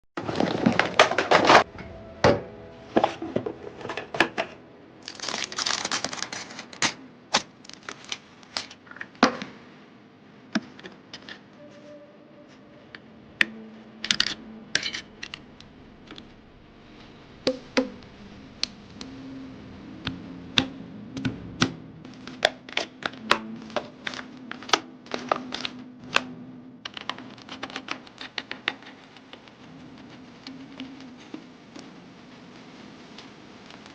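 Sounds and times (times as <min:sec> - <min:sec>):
packaging rustling and tearing: 0:03.8 - 0:09.1.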